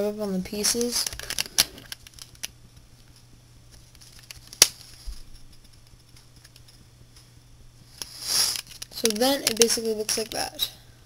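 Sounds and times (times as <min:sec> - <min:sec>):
low steady hum: 0:00.0 - 0:11.0
plastic cube pieces clicking: 0:08.0 - 0:10.4.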